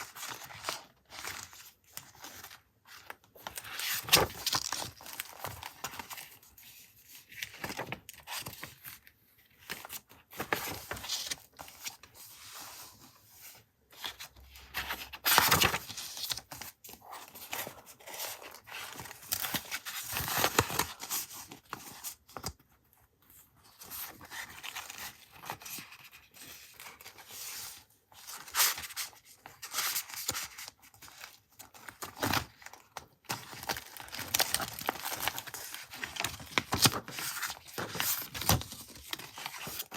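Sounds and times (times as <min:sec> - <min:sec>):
paper tearing and rustling: 0:15.2 - 0:16.4.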